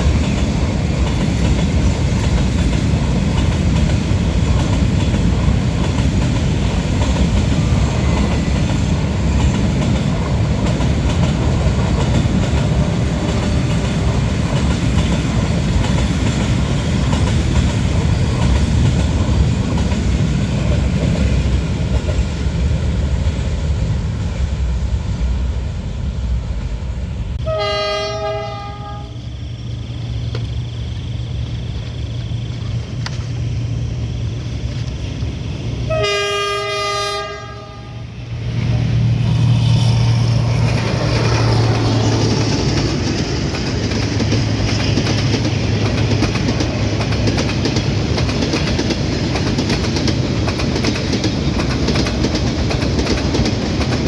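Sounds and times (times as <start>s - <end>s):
train rumbling: 0.0s - 54.0s
train horn blasts: 27.4s - 29.3s, 35.9s - 38.2s.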